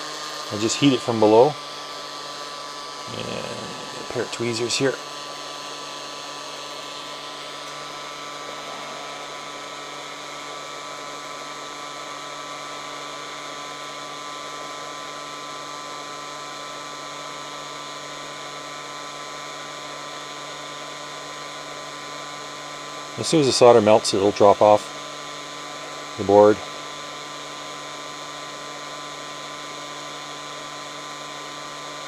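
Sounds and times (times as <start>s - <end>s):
heat gun blowing air: 0.0s - 15.2s
fan motor whine: 0.0s - 32.0s.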